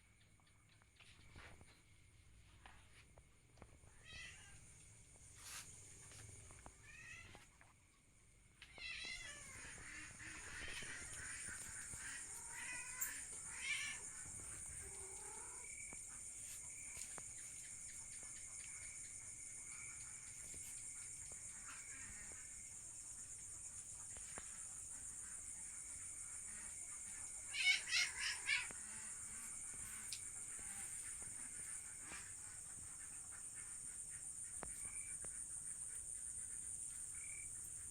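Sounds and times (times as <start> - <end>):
animal wavering cries: 12.0 - 14.1, 27.5 - 28.8.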